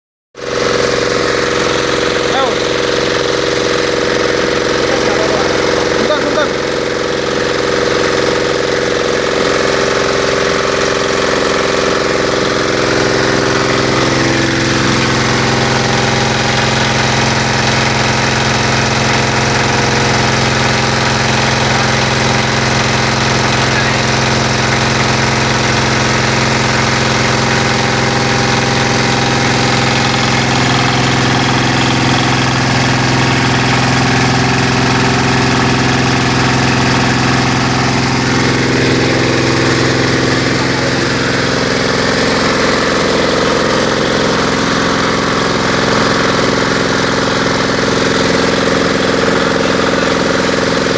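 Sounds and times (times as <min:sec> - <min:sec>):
pellet mill mechanical drone: 0:00.4 - 0:50.9.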